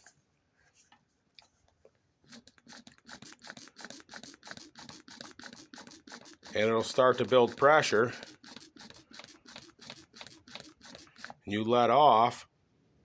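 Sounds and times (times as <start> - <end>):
hand pump squeaky clicks: 2.3 - 11.4.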